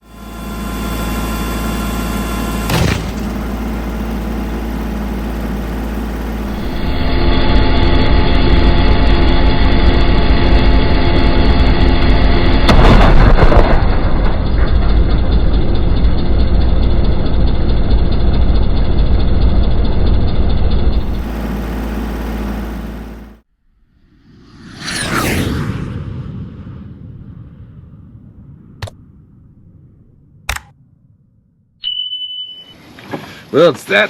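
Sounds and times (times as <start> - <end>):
engine running: 0.0 - 25.4.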